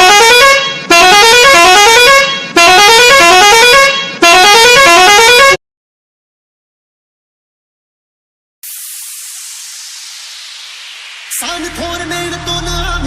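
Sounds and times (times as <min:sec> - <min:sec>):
electronic siren effect rising tone: 0:08.6 - 0:12.5.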